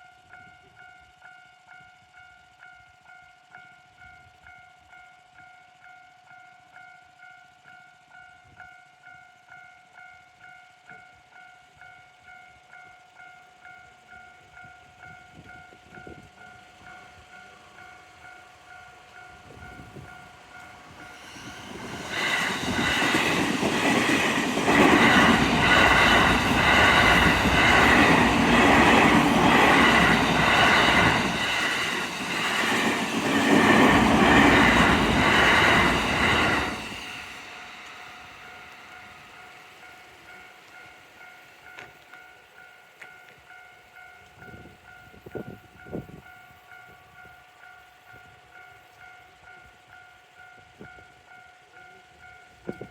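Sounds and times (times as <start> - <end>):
level crossing warning bell: 0.0 - 52.9
train passing: 11.8 - 52.9.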